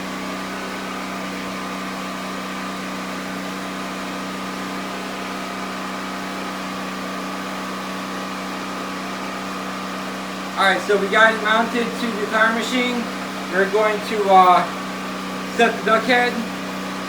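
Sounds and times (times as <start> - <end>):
machine hum: 7.9 - 17.0.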